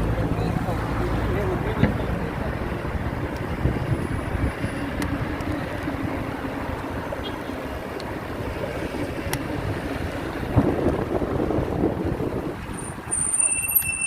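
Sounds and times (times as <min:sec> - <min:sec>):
road and traffic rumble: 0:00.0 - 0:14.0
wind on microphone: 0:03.0 - 0:07.1, 0:08.3 - 0:13.2.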